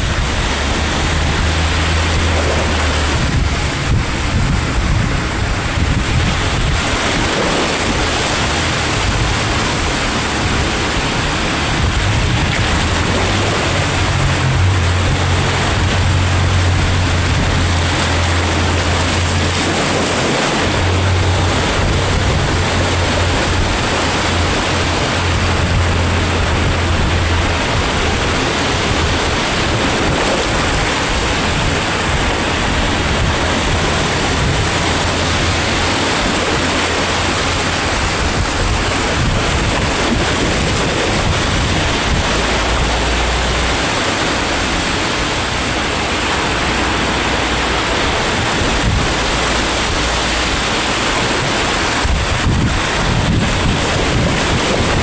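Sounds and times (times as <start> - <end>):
low rumble: 0.0 - 55.0
sea waves breaking on shore: 0.0 - 55.0.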